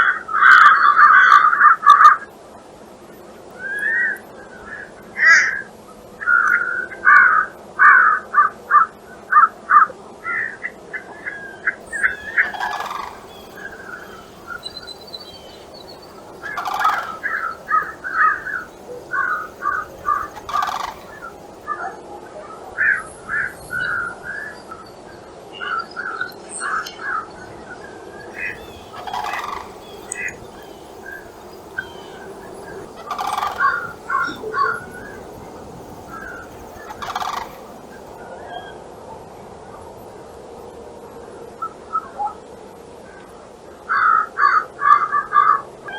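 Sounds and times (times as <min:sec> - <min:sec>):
large birds calling: 0:11.8 - 0:21.7, 0:28.4 - 0:38.2.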